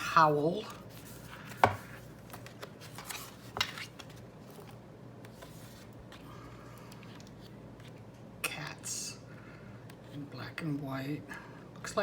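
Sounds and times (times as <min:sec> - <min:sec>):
paper rustling: 0:00.7 - 0:06.2.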